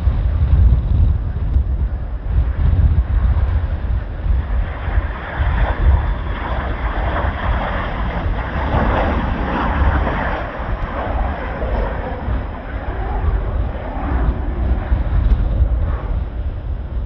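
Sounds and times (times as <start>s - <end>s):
steady rushing noise: 0.0s - 17.0s
wind buffeting microphone: 0.0s - 17.0s.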